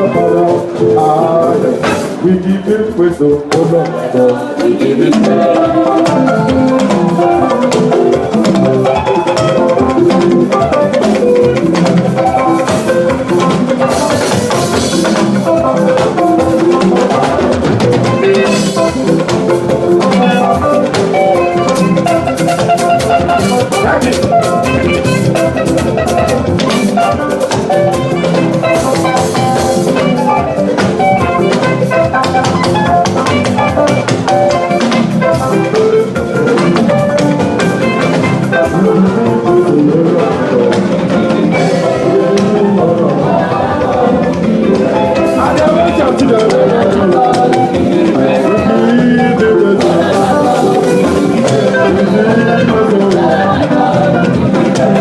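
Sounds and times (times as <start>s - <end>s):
drum kit rhythm: 0.0s - 55.0s.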